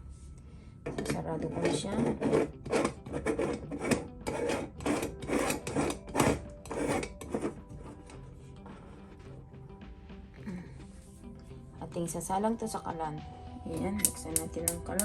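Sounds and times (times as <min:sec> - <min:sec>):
screw threads rasping: 0:00.9 - 0:08.3.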